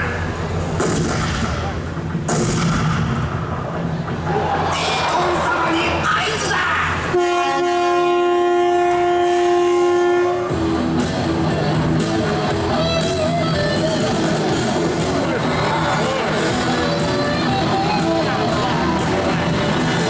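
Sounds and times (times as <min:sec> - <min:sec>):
long steady horn blast: 0:07.1 - 0:20.0
rock music with guitar: 0:10.5 - 0:20.0.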